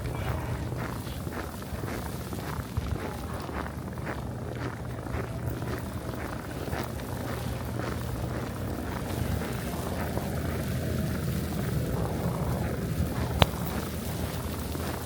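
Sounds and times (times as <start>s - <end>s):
footsteps crunching through snow: 0.0s - 15.0s
wind rumble on microphone: 0.0s - 15.0s.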